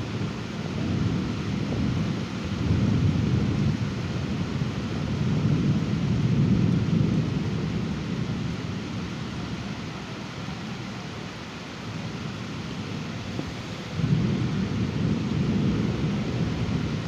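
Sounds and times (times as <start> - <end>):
low rolling thunder: 0.0 - 9.8, 12.2 - 17.0
rain hissing: 6.6 - 17.0.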